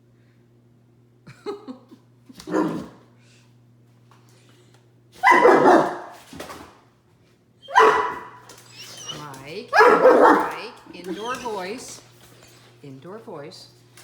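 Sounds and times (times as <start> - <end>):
dog barking: 2.5 - 2.9, 5.2 - 6.2, 7.7 - 8.4, 9.7 - 10.8.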